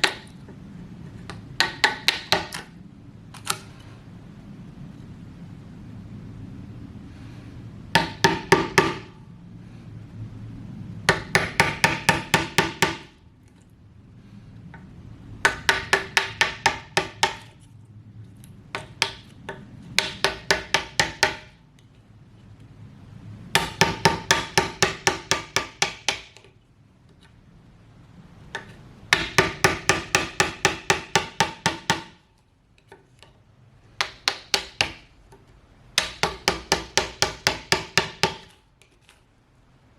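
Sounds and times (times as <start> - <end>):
hammer striking chisel into wood: 0.0 - 0.3, 1.3 - 2.7, 8.0 - 9.1, 11.1 - 13.2, 15.4 - 17.5, 18.7 - 21.6, 23.5 - 26.5, 28.5 - 32.2, 34.0 - 35.1, 36.0 - 38.6.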